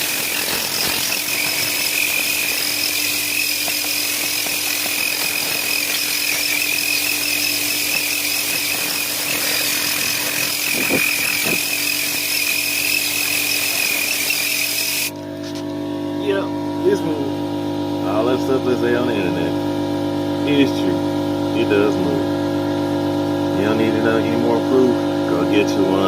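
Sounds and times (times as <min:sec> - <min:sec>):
compressed-air gun hissing: 0:00.0 - 0:15.1.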